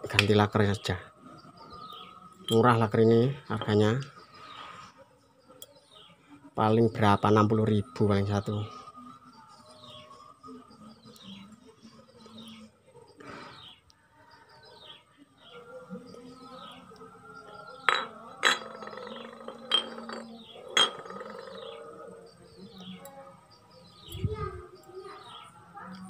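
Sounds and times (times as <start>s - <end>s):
small birds chirping: 0.0s - 26.0s
metal parts clinking: 17.9s - 21.6s.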